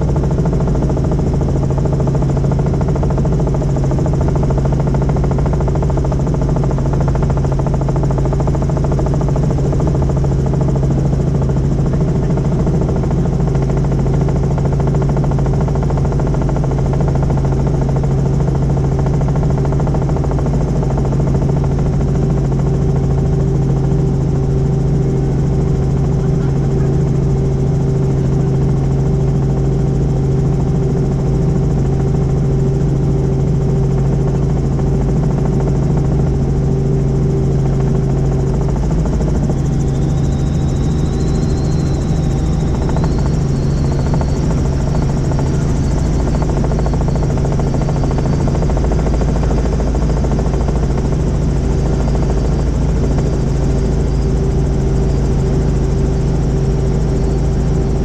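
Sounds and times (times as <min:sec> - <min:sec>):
helicopter engine and rotor: 0:00.0 - 0:58.0
faint high whine: 0:22.3 - 0:58.0.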